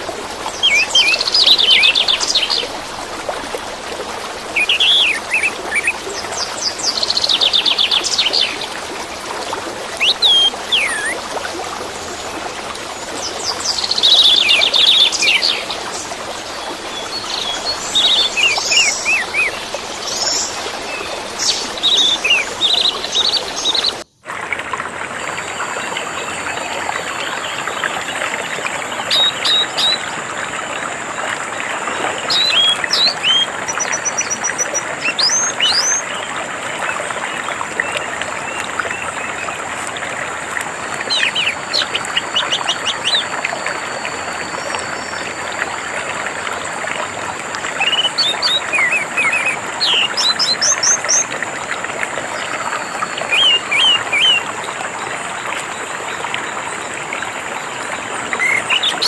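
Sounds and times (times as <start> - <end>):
water trickling: 0.0 - 59.0
thrush singing: 10.0 - 11.2.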